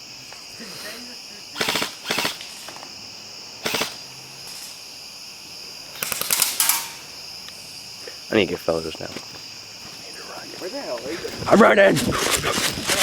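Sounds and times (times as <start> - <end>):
crickets chirping: 0.0 - 13.0
airsoft gun full-auto fire: 1.6 - 2.6, 3.6 - 4.0, 5.9 - 7.1.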